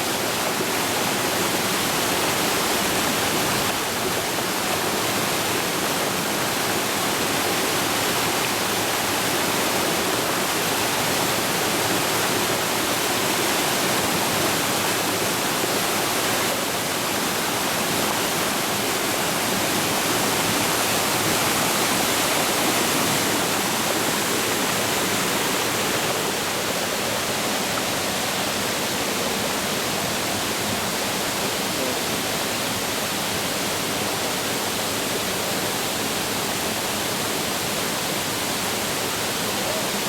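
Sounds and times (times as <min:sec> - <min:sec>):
waterfall roaring: 0:00.0 - 0:40.0.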